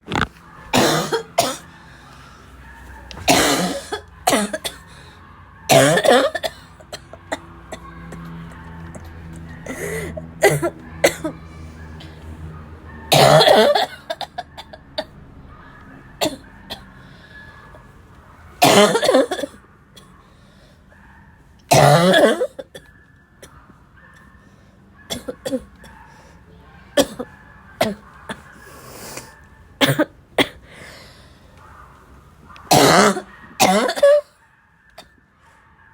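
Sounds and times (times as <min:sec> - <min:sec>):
person coughing: 0:00.8 - 0:01.7, 0:03.2 - 0:05.0, 0:05.7 - 0:07.2, 0:09.7 - 0:11.4, 0:13.1 - 0:14.4, 0:18.6 - 0:19.6, 0:21.7 - 0:22.8, 0:29.8 - 0:30.8, 0:32.7 - 0:34.3.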